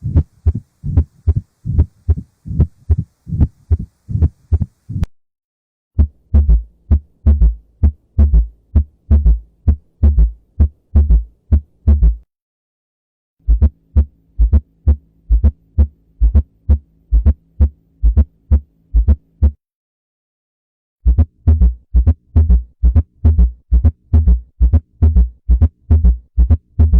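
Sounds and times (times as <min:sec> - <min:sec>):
faint steady hum: 0:00.0 - 0:05.1, 0:13.4 - 0:19.5
heartbeat lub-dub: 0:00.0 - 0:05.1, 0:06.0 - 0:12.3, 0:13.4 - 0:19.6, 0:21.0 - 0:26.9.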